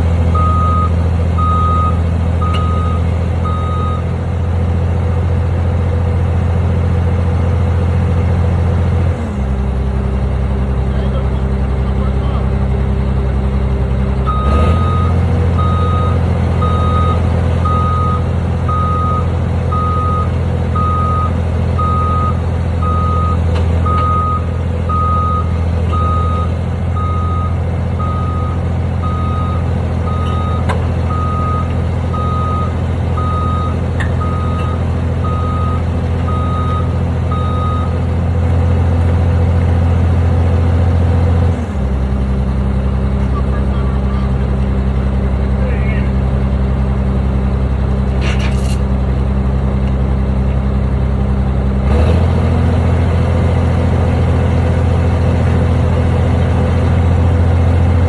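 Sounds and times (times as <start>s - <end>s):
diesel engine drone: 0.0s - 58.0s
reversing alarm beeping: 0.3s - 4.2s, 14.2s - 38.0s.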